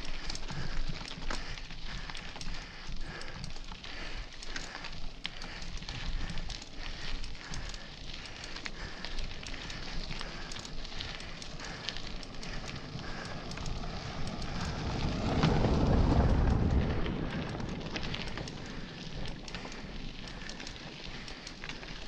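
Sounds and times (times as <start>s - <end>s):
tyres crunching over gravel: 0.0s - 22.0s
wind buffeting microphone: 10.3s - 20.5s
low rumble: 11.6s - 20.4s.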